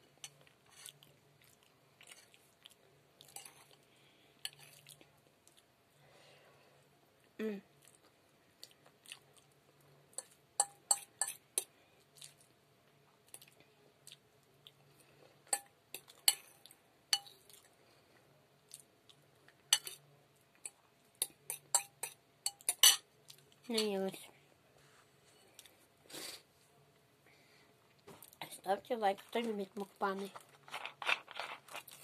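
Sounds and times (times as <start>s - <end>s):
person chewing crunchy food: 30.1s - 32.0s.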